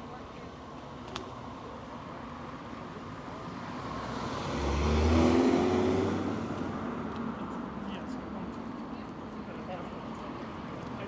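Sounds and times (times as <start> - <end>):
car driving past: 3.4 - 7.4.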